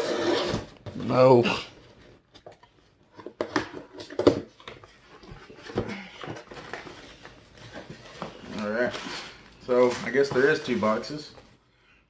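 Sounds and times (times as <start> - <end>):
cardboard rustling: 2.0 - 11.5.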